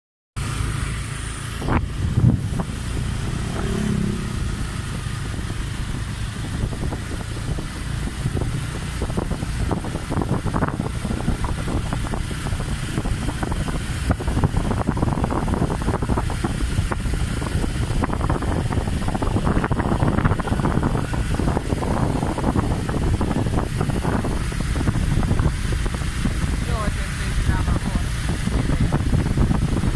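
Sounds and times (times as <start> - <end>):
vehicle engine and road noise: 0.4 - 29.9
wind rumbling on microphone: 0.4 - 29.9.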